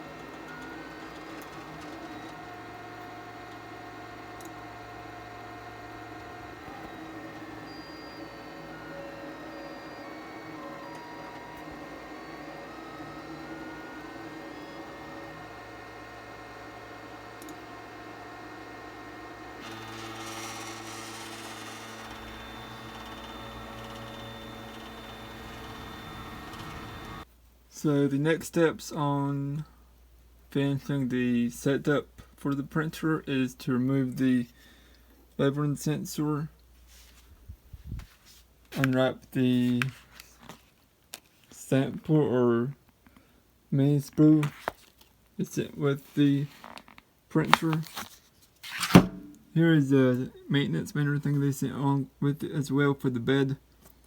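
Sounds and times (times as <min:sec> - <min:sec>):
steady hum: 0:00.0 - 0:27.2
stepper motors whining: 0:00.0 - 0:27.2.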